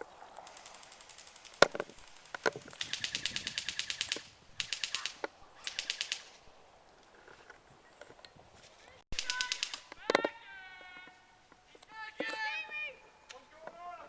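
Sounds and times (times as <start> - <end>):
airsoft guns firing bursts: 0.6 - 6.4, 9.1 - 10.0
sharp single crack: 0.6 - 6.4, 9.1 - 10.2.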